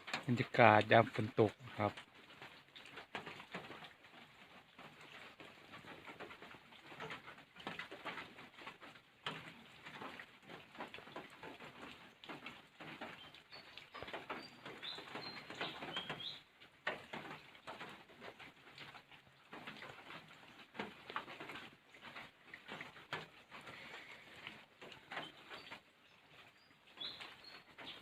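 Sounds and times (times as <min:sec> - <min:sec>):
rain pattering and dripping: 0:00.0 - 0:28.0
bird chirps: 0:13.2 - 0:16.5, 0:25.2 - 0:28.0.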